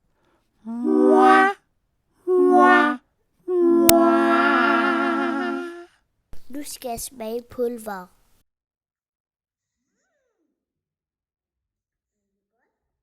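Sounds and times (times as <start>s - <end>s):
person singing held notes: 0.6s - 1.6s, 2.2s - 6.7s.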